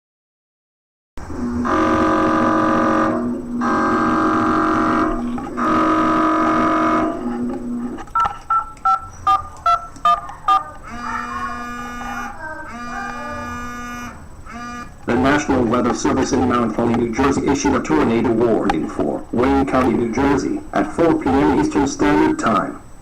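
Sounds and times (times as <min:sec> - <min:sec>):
buzzy electronic alert tones: 0:01.2 - 0:22.7
steady electronic tone: 0:01.2 - 0:23.0
quick beeps: 0:08.2 - 0:10.7.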